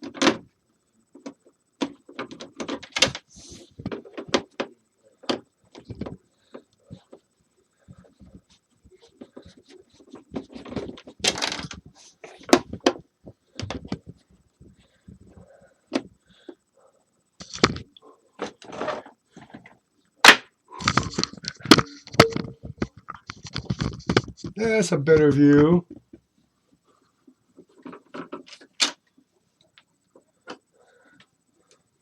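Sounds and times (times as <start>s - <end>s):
plastic casing knocks and rattles: 1.2s - 6.2s, 9.3s - 16.1s, 19.4s - 24.5s.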